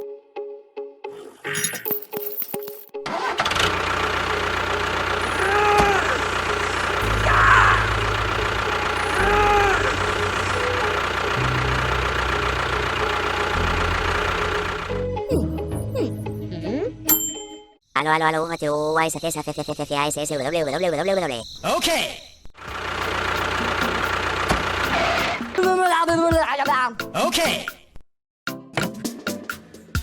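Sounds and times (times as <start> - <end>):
engine-like humming: 3.1 - 15.3, 22.6 - 25.6.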